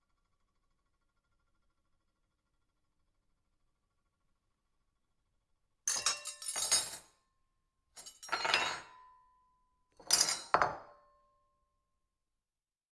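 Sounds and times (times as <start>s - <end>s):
silverware clattering on a plate: 5.9s - 7.1s, 8.0s - 9.1s, 10.0s - 11.1s.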